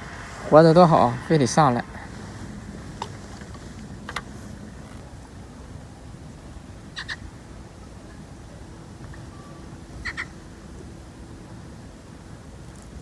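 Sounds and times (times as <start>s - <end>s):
low outdoor background: 0.0s - 13.0s
bird calling short sharp notes: 7.0s - 7.2s, 9.2s - 10.4s.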